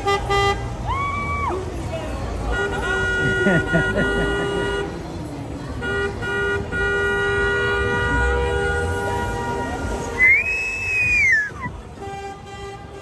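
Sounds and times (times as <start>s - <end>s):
car horn held steadily: 2.5s - 4.9s, 5.8s - 10.2s
loud rising and sliding whistle: 10.2s - 11.5s.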